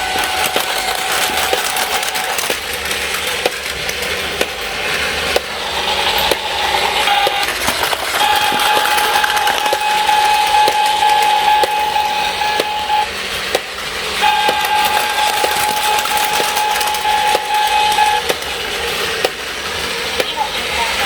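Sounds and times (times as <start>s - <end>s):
clicks over track: 0.0s - 19.5s
toy train motor whine: 0.0s - 21.0s.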